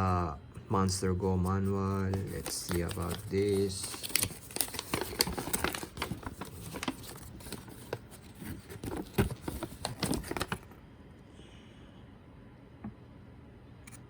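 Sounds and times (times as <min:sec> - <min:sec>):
paper rustling and crinkling: 0:01.4 - 0:10.7.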